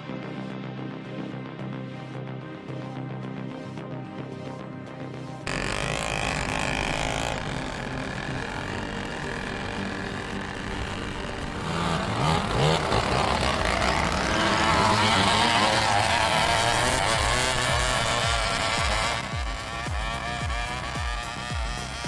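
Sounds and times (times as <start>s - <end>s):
truck diesel engine revving: 5.5s - 22.0s.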